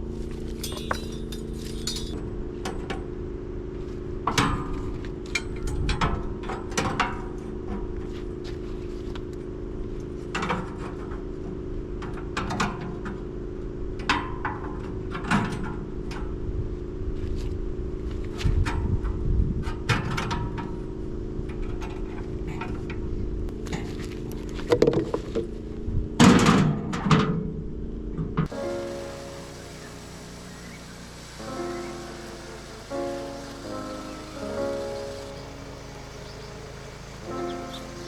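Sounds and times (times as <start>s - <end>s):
sharp clinks and knocks: 0.6s - 2.2s
machine humming: 28.5s - 38.0s.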